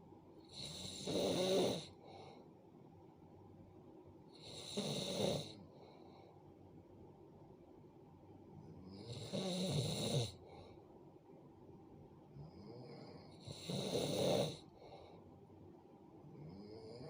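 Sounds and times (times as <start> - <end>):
person snoring: 0.5 - 2.0, 4.4 - 5.6, 8.9 - 10.4, 12.5 - 14.7.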